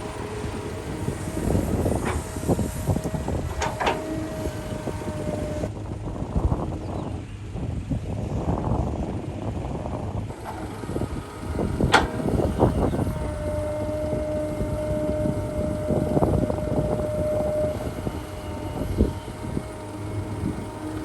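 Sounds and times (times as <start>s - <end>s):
steady whine: 0.0s - 5.8s, 10.3s - 21.0s
heavy diesel machinery engines: 0.0s - 21.0s.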